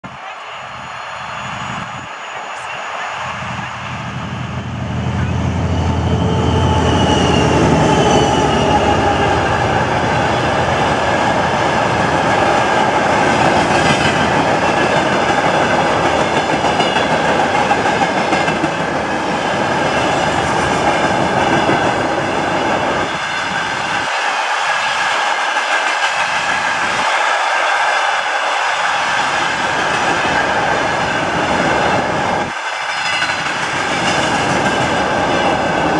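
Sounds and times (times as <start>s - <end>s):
high wheel squeal: 4.5s - 10.6s.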